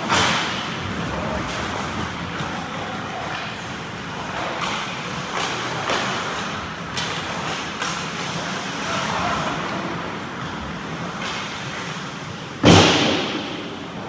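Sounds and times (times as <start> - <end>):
skates scraping on ice: 0.0 - 14.0.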